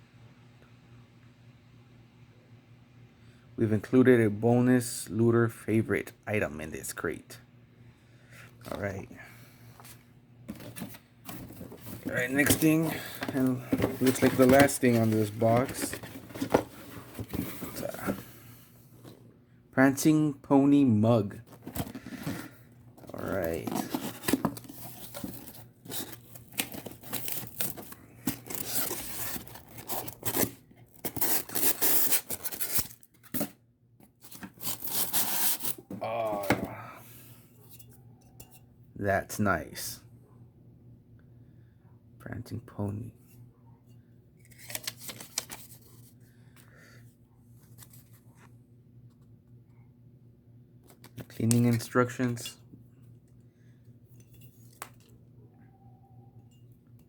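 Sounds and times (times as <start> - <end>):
packaging tearing and crinkling: 11.5 - 17.3, 23.0 - 33.5, 34.2 - 35.8.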